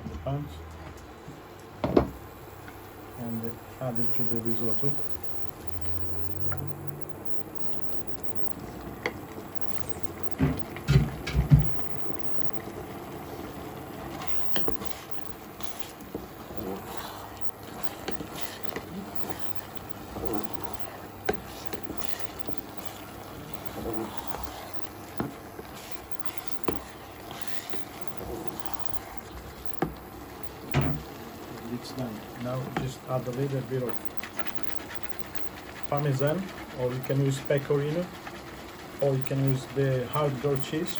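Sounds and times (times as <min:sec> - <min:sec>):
pan simmering: 0:00.0 - 0:40.9
utensil scraping and knocking pans: 0:10.3 - 0:11.8.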